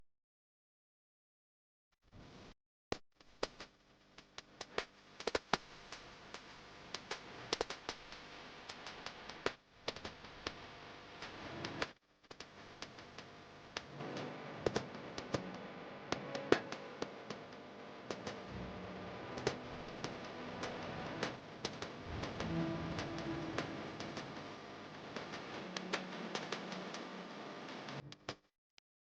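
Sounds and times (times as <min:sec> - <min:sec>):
low background noise: 0:13.2 - 0:28.0.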